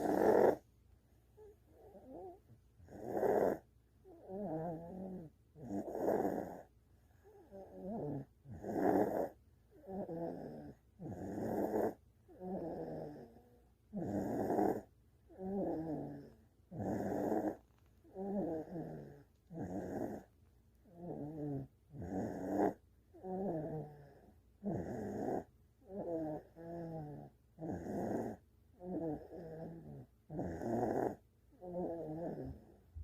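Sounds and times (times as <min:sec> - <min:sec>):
rhythmic snoring: 0:00.0 - 0:00.7, 0:01.4 - 0:32.8.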